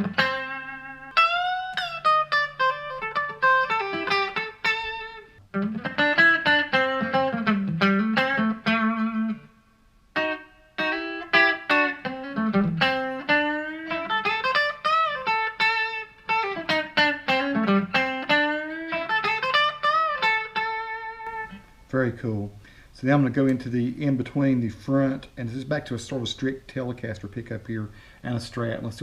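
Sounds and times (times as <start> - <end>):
electric guitar lead with bends: 0.0 - 21.8.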